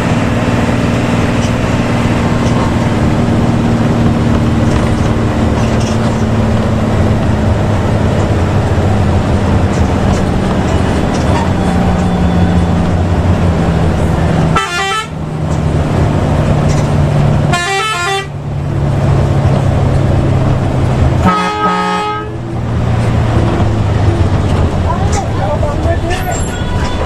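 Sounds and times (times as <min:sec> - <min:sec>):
diesel bus engine droning: 0:00.0 - 0:27.0
multi-note bus horn: 0:14.5 - 0:15.2, 0:17.5 - 0:18.4, 0:21.2 - 0:22.4.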